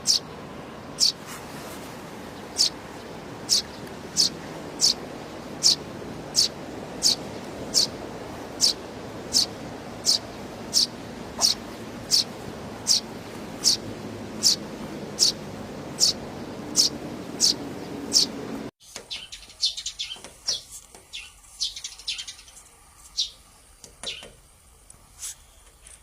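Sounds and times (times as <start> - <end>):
sparrow chirping: 0.0 - 1.2, 2.4 - 5.0, 5.6 - 18.5, 19.1 - 22.6, 23.2 - 23.4, 24.0 - 24.3
steady background hum: 0.0 - 18.7.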